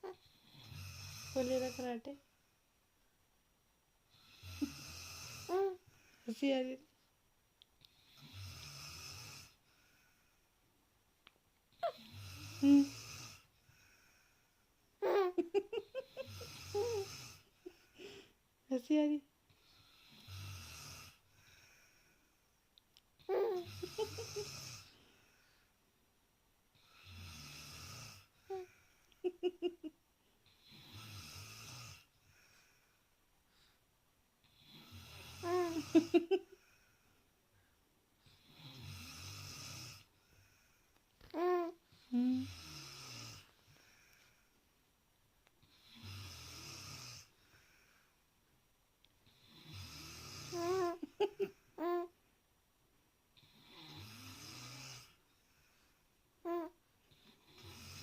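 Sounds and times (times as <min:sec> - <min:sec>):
person snoring: 0:00.0 - 0:02.0, 0:04.1 - 0:05.8, 0:08.0 - 0:09.6, 0:11.8 - 0:13.5, 0:15.8 - 0:18.3, 0:19.6 - 0:21.7, 0:23.3 - 0:25.4, 0:26.8 - 0:29.8, 0:30.6 - 0:32.1, 0:34.5 - 0:36.7, 0:38.2 - 0:40.6, 0:41.4 - 0:44.2, 0:45.7 - 0:47.8, 0:49.3 - 0:52.1, 0:53.4 - 0:55.2, 0:56.5 - 0:58.0.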